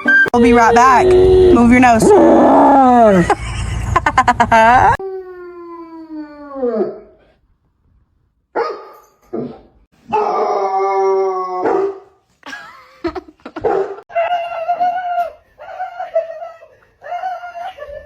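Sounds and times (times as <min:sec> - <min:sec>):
dog howling and barking: 0:00.3 - 0:03.3, 0:08.6 - 0:12.1, 0:13.6 - 0:18.0.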